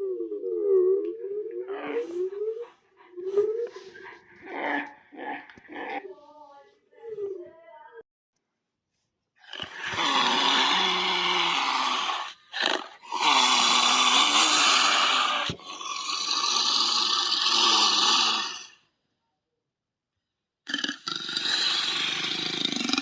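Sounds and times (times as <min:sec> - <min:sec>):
monster creature roaring: 0:09.4 - 0:18.8, 0:20.7 - 0:23.0.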